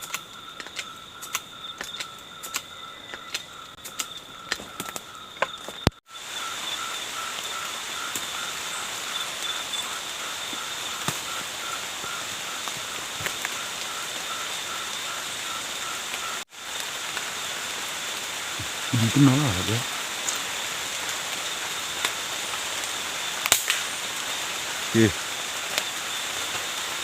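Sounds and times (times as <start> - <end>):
sharp clicks: 0.0 - 6.0
even hiss: 16.6 - 27.0.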